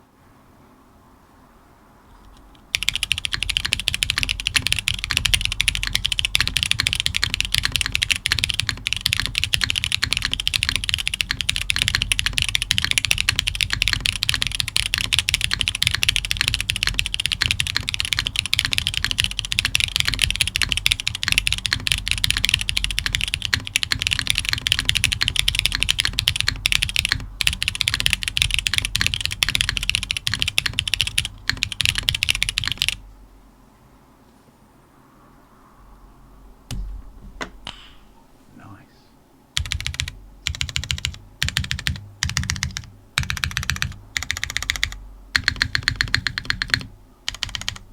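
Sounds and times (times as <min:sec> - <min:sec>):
mechanical keyboard typing: 0:02.3 - 0:33.0, 0:39.6 - 0:47.9.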